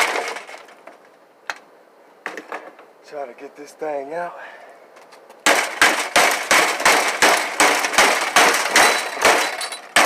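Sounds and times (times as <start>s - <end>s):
hammer striking metal: 5.5s - 10.0s.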